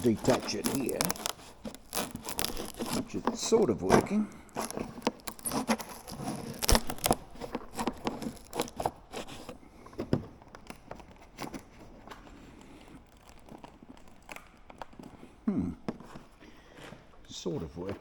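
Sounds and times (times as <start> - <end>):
packaging tape peeling and crackling: 0.0 - 17.3.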